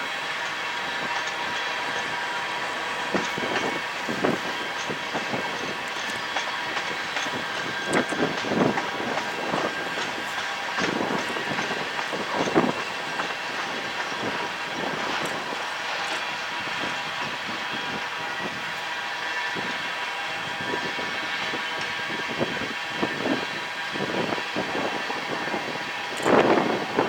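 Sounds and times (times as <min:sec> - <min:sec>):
wheels clacking over rail joints: 0:00.0 - 0:18.9
train wheels rumbling on rails: 0:00.0 - 0:27.0.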